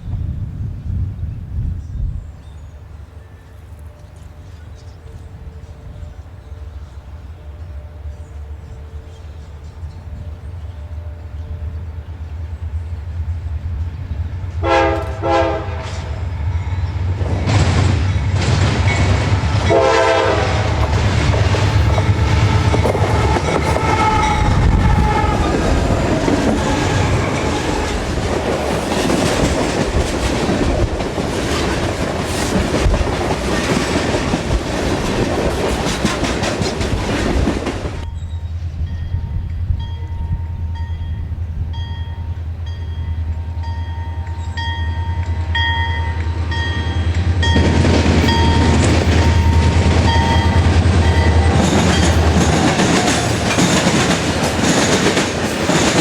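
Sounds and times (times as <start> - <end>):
train wheels on rails: 2.8 - 56.0
train horn blasts: 14.6 - 29.1.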